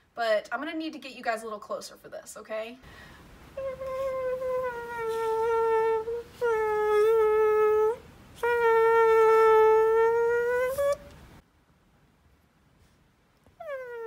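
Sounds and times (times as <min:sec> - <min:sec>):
woman breathing: 0:02.8 - 0:03.5
woman imitating fly buzzing: 0:03.6 - 0:11.0.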